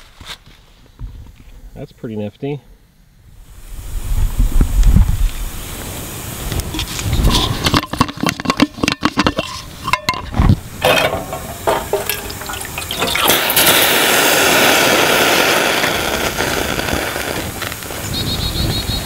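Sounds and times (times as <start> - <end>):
water pouring: 6.7 - 17.0.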